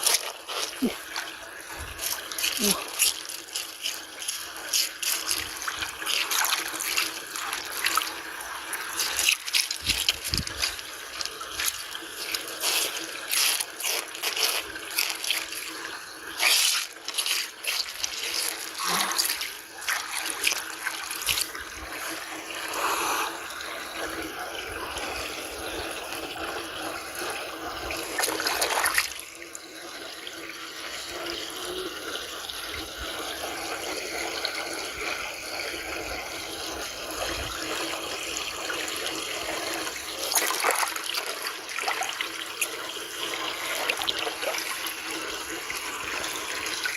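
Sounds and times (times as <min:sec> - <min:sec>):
splashes and knocks: 0:00.0 - 0:08.1, 0:08.8 - 0:15.8, 0:16.4 - 0:21.6, 0:28.1 - 0:29.2, 0:40.3 - 0:42.2
stream water running: 0:00.0 - 0:46.9.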